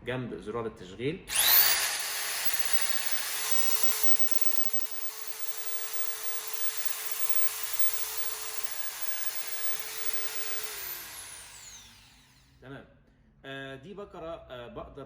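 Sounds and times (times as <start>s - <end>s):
belt sander whining: 1.3s - 12.4s.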